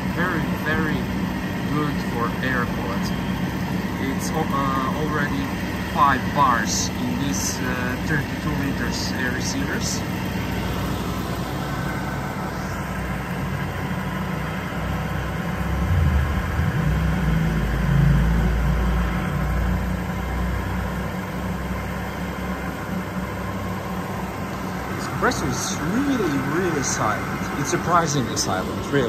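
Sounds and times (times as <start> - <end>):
air compressor humming: 0.0 - 29.0
low rumble: 15.5 - 19.5.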